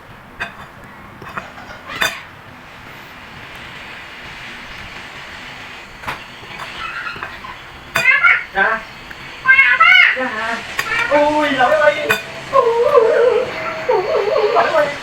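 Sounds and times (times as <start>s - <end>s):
steady hiss: 0.0s - 15.0s
utensils and dishes clinking: 0.0s - 15.0s.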